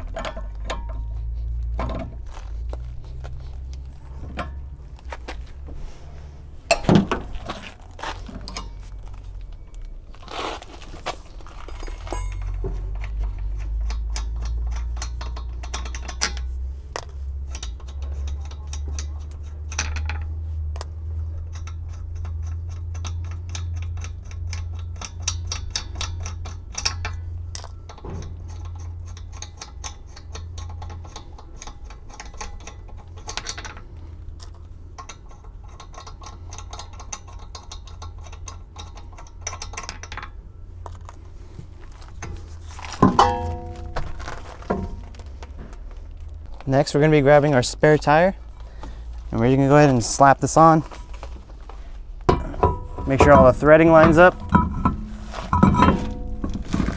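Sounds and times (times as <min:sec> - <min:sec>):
steady low rumble: 0:00.0 - 0:39.7, 0:40.3 - 0:56.9
light metal clinks: 0:11.4 - 0:16.5
ratchet wrench clicking: 0:11.8 - 0:40.3.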